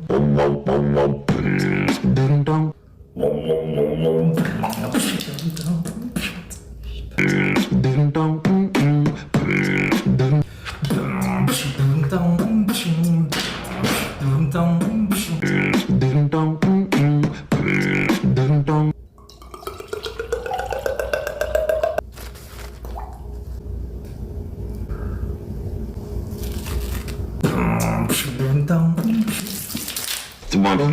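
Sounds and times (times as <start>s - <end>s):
low hummed bass line: 7.2s - 19.0s, 27.4s - 29.3s
beatboxing drum hits and clicks: 16.6s - 18.3s, 20.9s - 22.0s.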